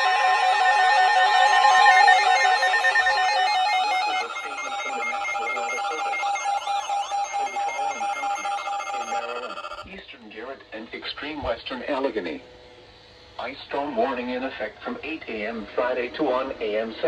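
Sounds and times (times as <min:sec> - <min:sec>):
high alert tone: 0:00.0 - 0:09.9.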